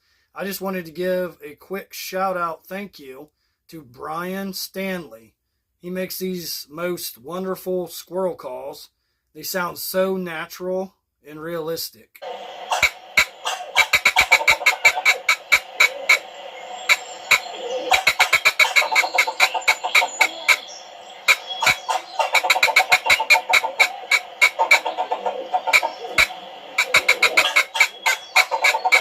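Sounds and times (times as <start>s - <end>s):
squirrel call barks and chatter: 12.2s - 29.0s.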